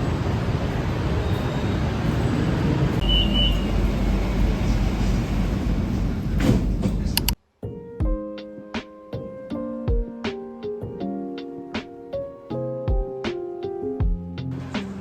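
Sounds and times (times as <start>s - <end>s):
moving vehicle rumble: 0.0s - 7.4s.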